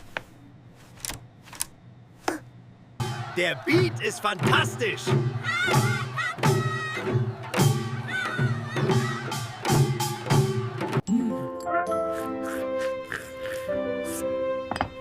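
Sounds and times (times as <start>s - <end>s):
music with percussive beat: 3.0s - 11.0s.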